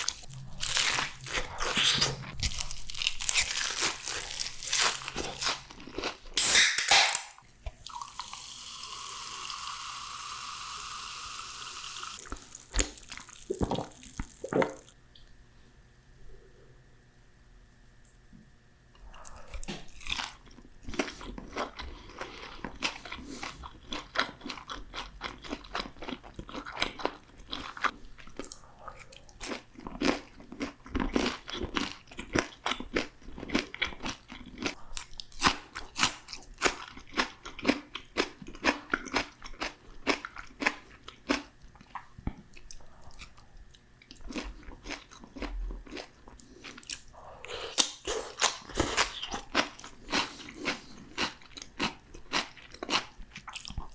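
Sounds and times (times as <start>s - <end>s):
crunchy chewing: 0.0s - 6.3s, 19.0s - 53.9s.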